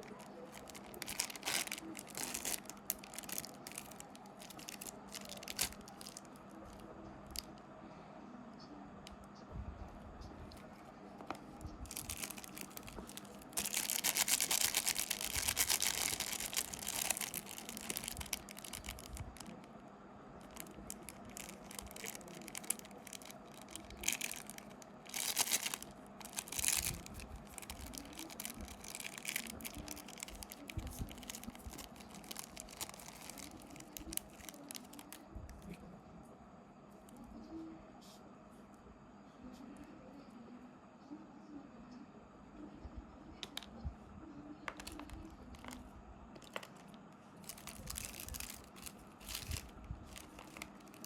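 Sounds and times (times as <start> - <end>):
plastic wrappers crinkling and tearing: 0.0 - 7.5, 11.3 - 19.7, 20.4 - 35.8, 44.7 - 45.8, 46.4 - 51.0.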